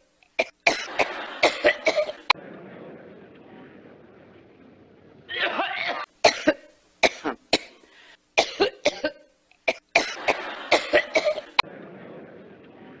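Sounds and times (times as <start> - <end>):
woman coughing: 0.4 - 2.2, 5.4 - 7.8, 8.4 - 11.5.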